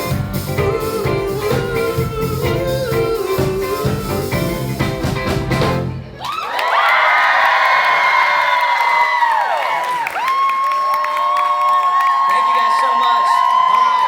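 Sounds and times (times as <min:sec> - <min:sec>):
live band playing pop song: 0:00.0 - 0:06.1
audience cheering and whooping: 0:06.0 - 0:14.0.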